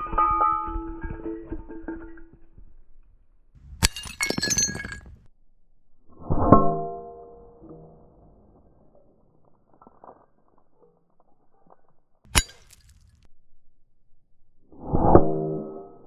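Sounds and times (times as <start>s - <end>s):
glass pieces tinkling: 3.8s - 5.2s
glass shattering: 3.8s - 5.3s, 12.3s - 13.2s.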